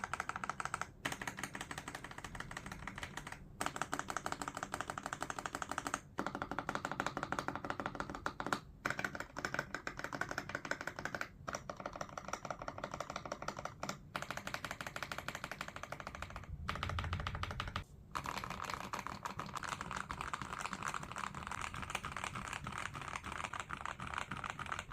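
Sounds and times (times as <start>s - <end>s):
mechanical keyboard typing: 0.0s - 24.9s
low rumble: 16.3s - 17.8s.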